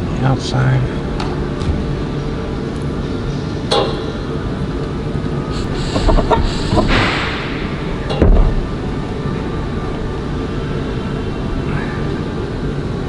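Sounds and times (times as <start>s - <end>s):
steady low hum: 0.8s - 13.0s
scraping hiss: 5.5s - 8.0s
parts clicking and knocking: 5.8s - 7.2s.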